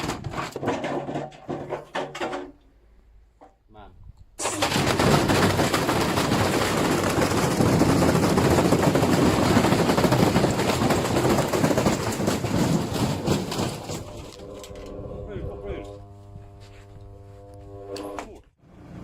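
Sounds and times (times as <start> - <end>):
washing machine clattering and banging: 4.6 - 14.2.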